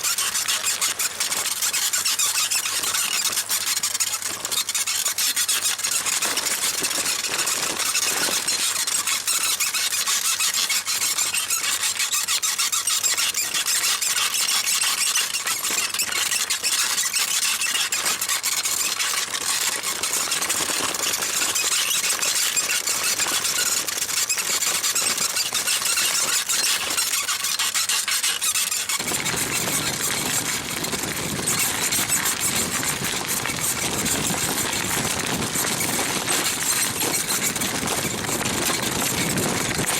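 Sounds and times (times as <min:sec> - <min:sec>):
bicycle saddle squeaking: 0:00.0 - 0:39.9
deep rubbing noise: 0:28.2 - 0:39.9.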